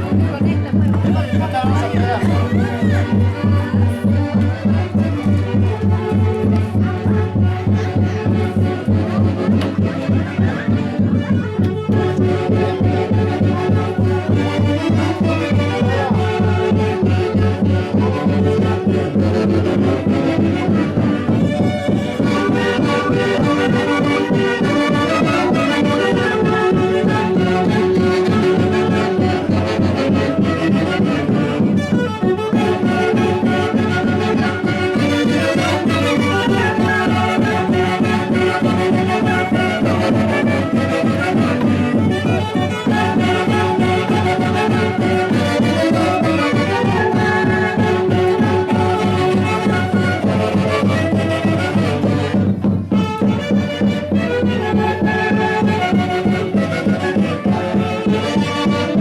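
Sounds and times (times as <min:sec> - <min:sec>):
festive band with wind instruments: 0:00.0 - 0:59.0.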